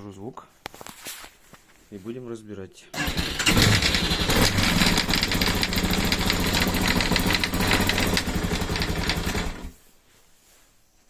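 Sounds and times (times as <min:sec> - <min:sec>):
gearbox knocking: 0:03.0 - 0:09.7
motorcycle engine running: 0:03.0 - 0:09.8.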